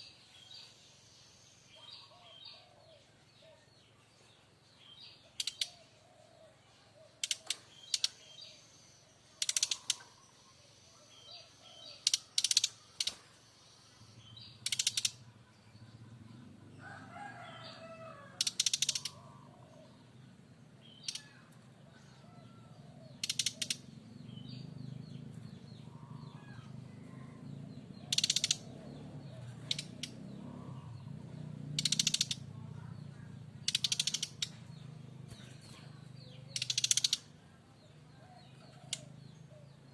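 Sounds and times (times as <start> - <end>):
bird harsh rattling calls: 9.4 - 10.2, 11.9 - 13.2, 14.4 - 15.2, 18.4 - 19.6, 23.2 - 23.9, 28.0 - 28.7, 29.6 - 30.2, 31.7 - 32.4, 33.6 - 34.6, 36.5 - 37.3.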